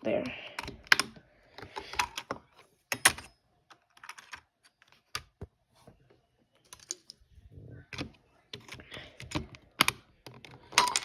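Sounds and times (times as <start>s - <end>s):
keyboard plastic clicks and taps: 0.6s - 5.5s, 7.9s - 11.0s.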